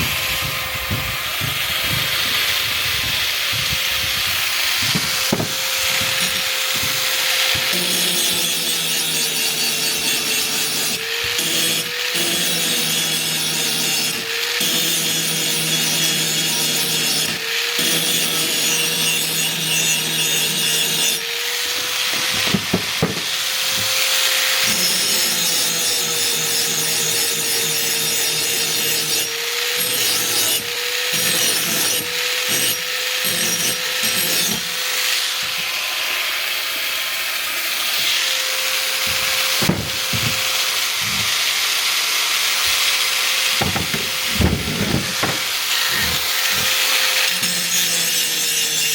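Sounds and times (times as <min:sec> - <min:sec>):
power grinder motor whine: 0:00.0 - 0:48.4
axe blade grinding: 0:03.6 - 0:17.2, 0:17.9 - 0:36.9, 0:42.7 - 0:48.9.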